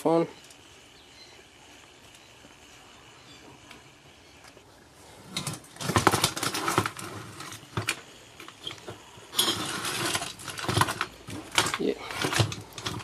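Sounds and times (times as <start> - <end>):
scraping and rustling: 5.1 - 13.0
electronics parts clattering: 5.2 - 13.0.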